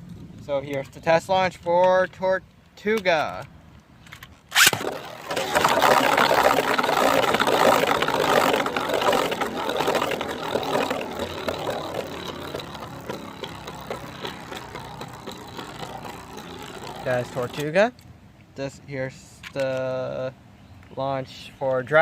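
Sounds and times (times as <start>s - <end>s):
launcher snap: 4.5s - 5.0s
spinning top rattling whir: 4.5s - 17.9s.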